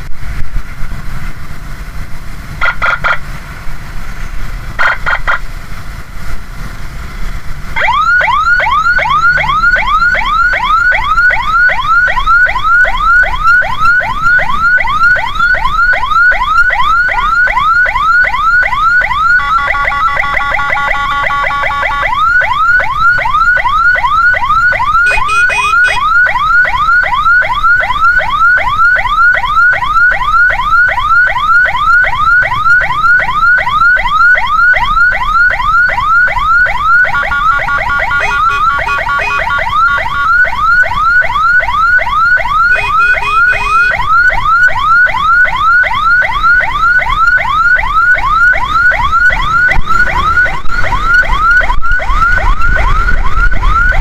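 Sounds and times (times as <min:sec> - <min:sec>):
ambulance siren yelping: 0:02.6 - 0:03.2, 0:04.8 - 0:05.4, 0:07.8 - 0:54.0
short steady tone: 0:25.0 - 0:26.0.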